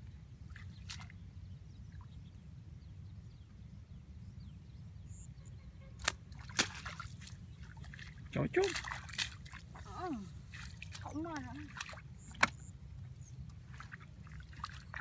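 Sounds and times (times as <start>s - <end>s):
low steady rumble: 0.0s - 6.5s.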